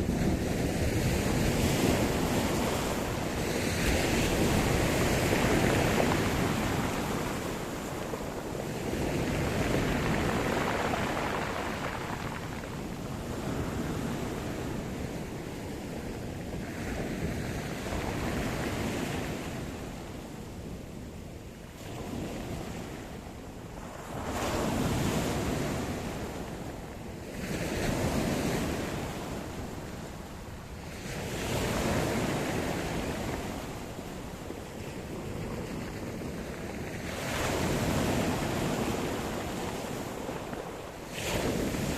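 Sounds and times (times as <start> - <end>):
waves breaking and washing in: 0.0 - 41.9.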